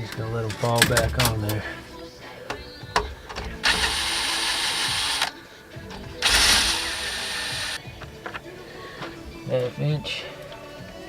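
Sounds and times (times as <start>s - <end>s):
ratchet wrench clicking: 6.2s - 7.8s.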